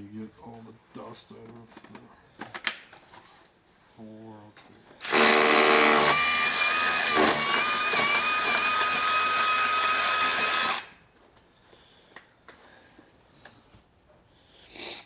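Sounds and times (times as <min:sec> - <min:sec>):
electric power tool whining: 0:05.0 - 0:11.0.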